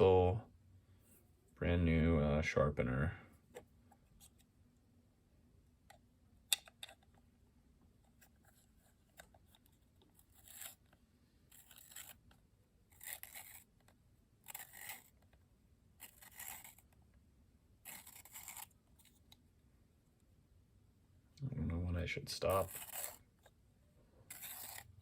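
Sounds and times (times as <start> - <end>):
pencil sharpener scraping wood: 8.2 - 15.4, 16.0 - 17.0, 17.8 - 19.4, 22.4 - 23.6, 24.3 - 25.0.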